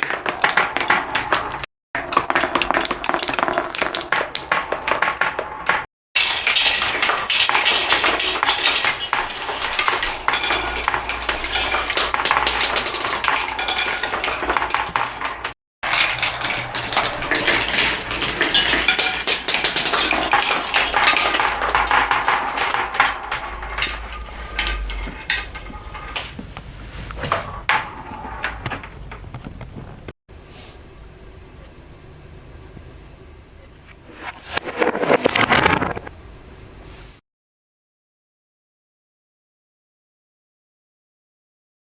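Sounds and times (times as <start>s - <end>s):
marbles clattering down a run: 0.0s - 26.3s.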